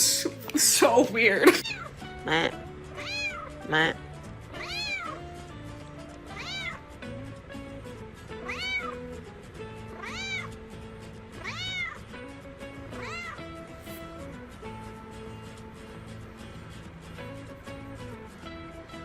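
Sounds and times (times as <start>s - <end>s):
background music: 0.0s - 19.0s
cat meowing: 1.6s - 3.9s, 4.5s - 5.3s, 6.2s - 6.9s, 8.4s - 9.1s, 9.9s - 10.6s, 11.4s - 12.1s, 12.8s - 13.6s.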